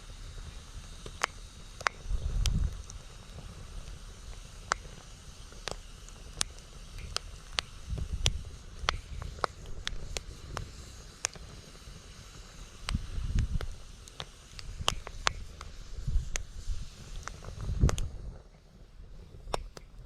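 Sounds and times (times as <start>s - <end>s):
campfire crackling: 0.0s - 20.0s
wind rumbling on microphone: 0.0s - 20.0s
wood fire pops and snaps: 0.0s - 20.0s.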